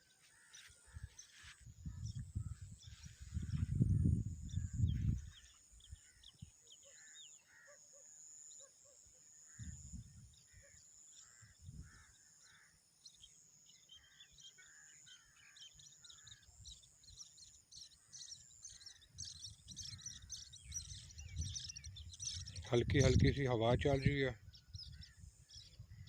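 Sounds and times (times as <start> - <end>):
birds chirping: 0.0 - 26.0
wind gusts on microphone: 1.6 - 6.5, 9.6 - 10.4, 11.6 - 12.0, 19.2 - 26.0.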